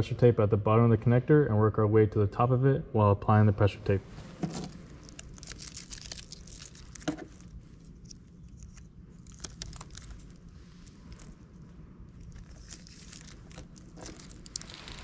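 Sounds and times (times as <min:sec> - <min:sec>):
tape crackling and crinkling: 0:04.4 - 0:15.0.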